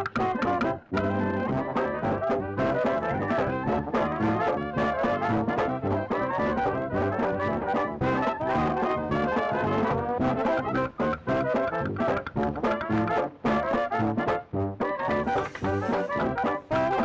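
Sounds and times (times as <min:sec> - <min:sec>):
upbeat music with brass horns: 0:00.0 - 0:17.0.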